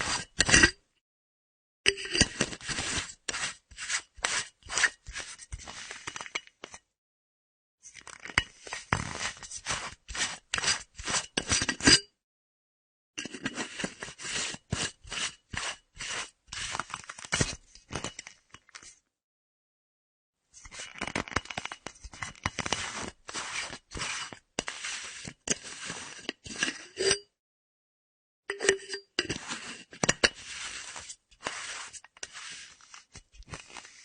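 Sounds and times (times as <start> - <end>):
metal flask screw cap twisting: 0.0 - 0.8, 1.9 - 6.8, 7.9 - 9.5, 10.5 - 12.1, 25.2 - 27.3, 28.5 - 34.0.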